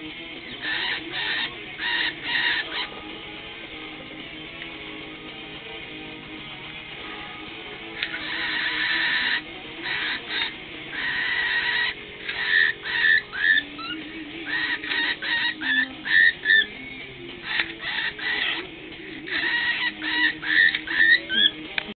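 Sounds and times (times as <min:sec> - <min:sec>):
cockatiel screeching and chirping: 0:00.5 - 0:02.9, 0:08.1 - 0:16.7, 0:17.4 - 0:21.6.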